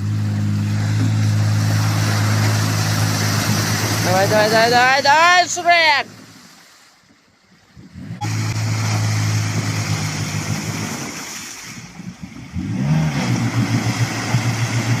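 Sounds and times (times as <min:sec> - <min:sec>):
engine revving under load: 0:00.0 - 0:05.1, 0:07.8 - 0:15.0.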